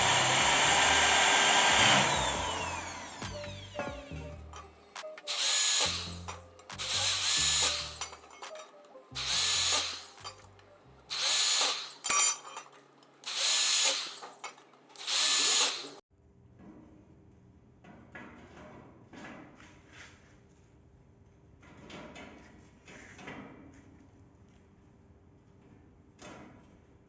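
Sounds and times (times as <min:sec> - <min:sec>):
power drill motor spinning: 0:00.0 - 0:03.8, 0:04.4 - 0:16.0.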